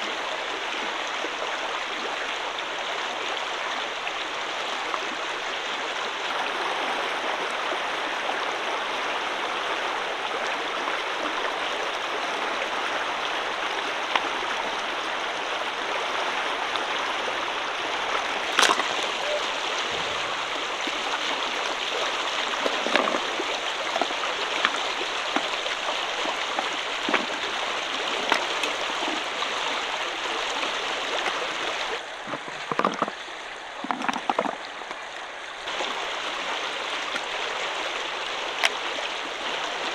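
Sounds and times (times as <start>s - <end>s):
shallow river water running: 0.0s - 39.9s
knocks and splashes: 18.0s - 29.8s, 31.1s - 33.2s, 33.8s - 34.9s.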